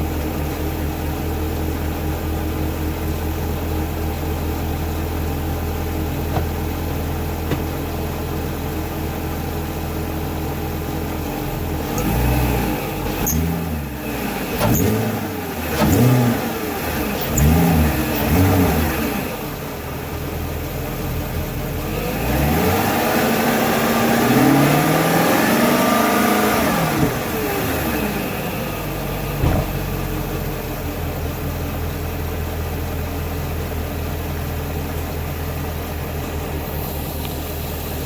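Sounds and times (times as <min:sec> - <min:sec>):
car engine idling and revving: 0:00.0 - 0:38.0
squealing drive belt: 0:13.0 - 0:13.6, 0:15.7 - 0:18.5.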